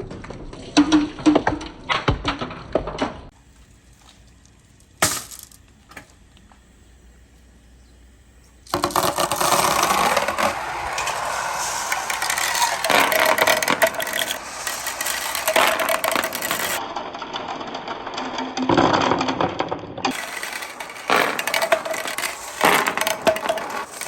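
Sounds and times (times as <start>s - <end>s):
marbles rattling down wooden ramps: 5.0s - 5.7s, 8.7s - 24.0s.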